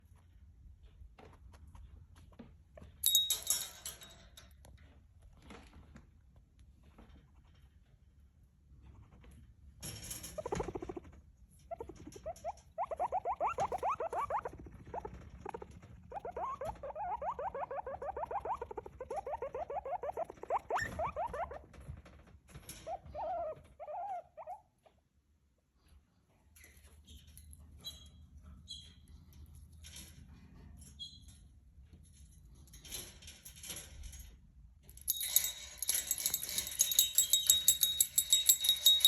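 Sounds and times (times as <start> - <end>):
guinea pig calling: 10.4 - 21.8, 22.8 - 24.8.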